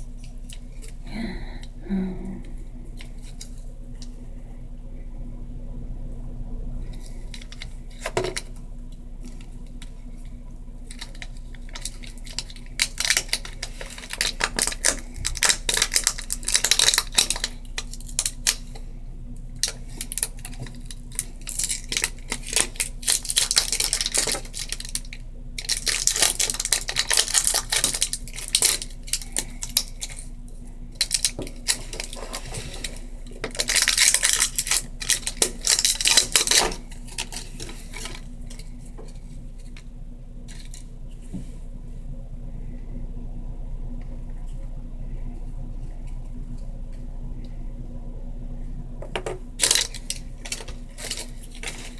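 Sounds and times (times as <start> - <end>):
plastic items clicking and clattering: 10.9 - 18.8, 19.6 - 30.3, 31.0 - 39.8, 49.1 - 51.9.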